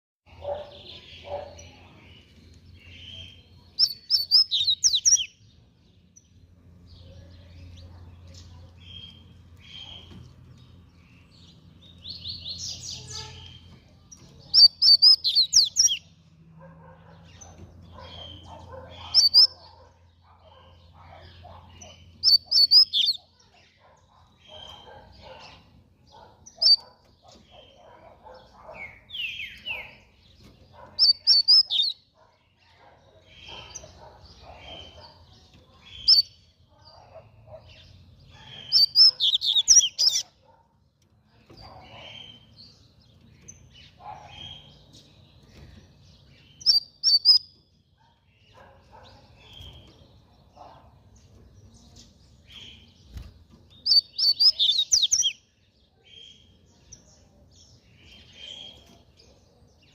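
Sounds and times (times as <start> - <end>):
bird chirps: 0.3 - 59.9
bird singing high rapid phrases: 0.3 - 59.9.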